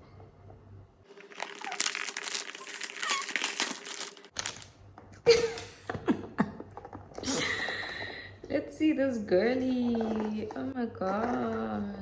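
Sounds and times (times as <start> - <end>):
packaging crinkling and tearing: 1.1 - 4.8.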